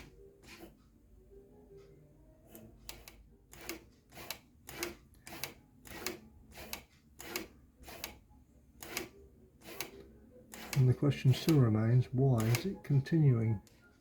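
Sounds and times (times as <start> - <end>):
point motor clicking: 2.4 - 11.6, 12.4 - 12.8.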